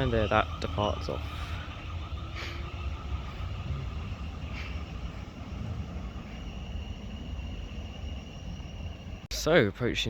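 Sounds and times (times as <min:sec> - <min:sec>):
faint high whine: 0:00.0 - 0:10.0
train rumbling: 0:00.0 - 0:10.0.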